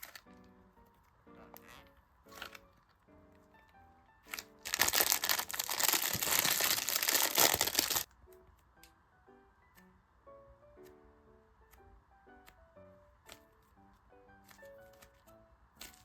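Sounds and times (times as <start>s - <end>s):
plastic packaging crinkling: 0.0s - 0.3s, 4.3s - 8.1s
quiet background music: 0.0s - 16.0s.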